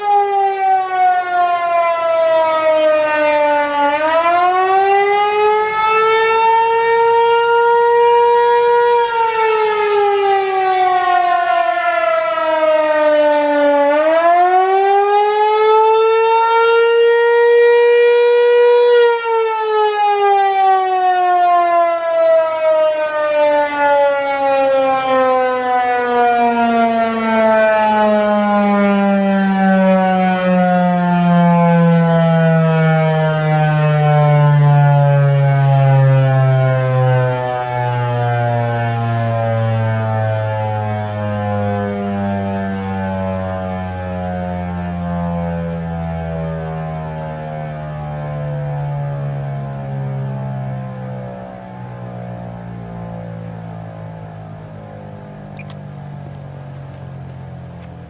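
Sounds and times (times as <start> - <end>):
warning siren rising and falling: 0.0 - 58.0.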